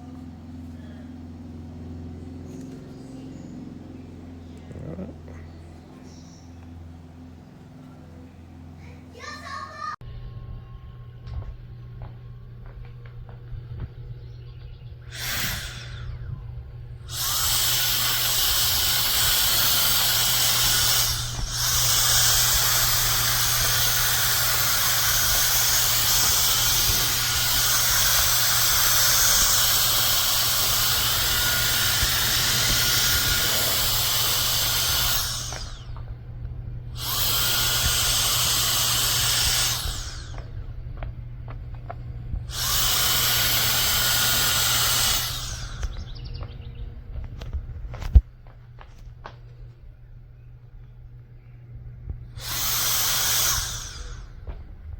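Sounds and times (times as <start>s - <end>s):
electric air duster hissing: 15.0s - 41.6s, 42.3s - 46.5s, 52.3s - 54.8s.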